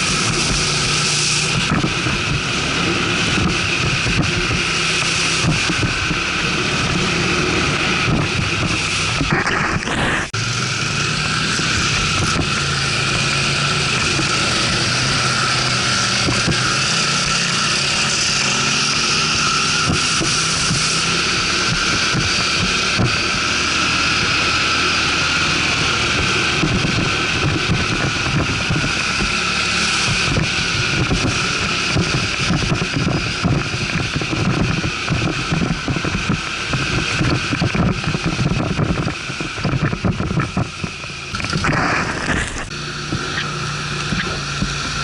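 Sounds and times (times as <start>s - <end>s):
atv engine running: 0.0s - 45.0s
wind buffeting microphone: 0.0s - 45.0s.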